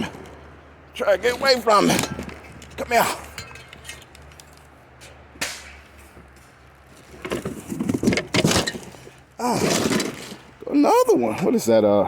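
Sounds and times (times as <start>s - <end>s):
scrap clattering and scraping: 1.1s - 4.7s, 6.0s - 10.6s.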